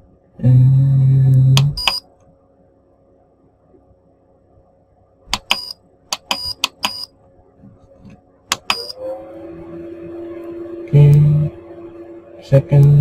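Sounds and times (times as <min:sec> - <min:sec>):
button clicks: 0:05.3 - 0:07.1, 0:08.5 - 0:09.0.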